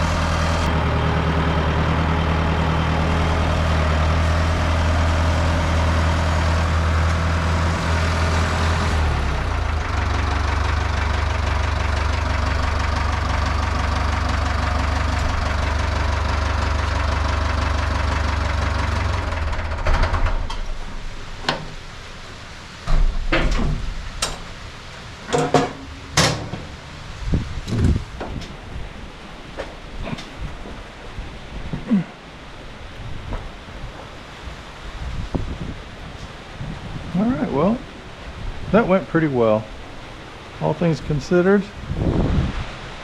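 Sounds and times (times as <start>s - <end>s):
tractor engine running: 0.0s - 43.0s
knocks and clanks: 19.2s - 21.9s, 22.8s - 24.6s, 25.3s - 26.9s, 27.6s - 28.7s.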